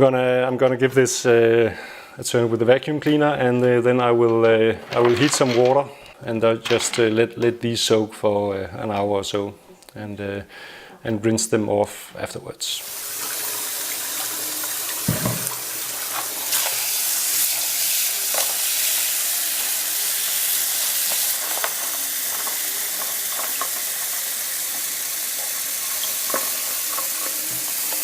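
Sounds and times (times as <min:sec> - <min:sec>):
tap water running into container: 0:12.8 - 0:28.0
dull knock: 0:15.1 - 0:15.5.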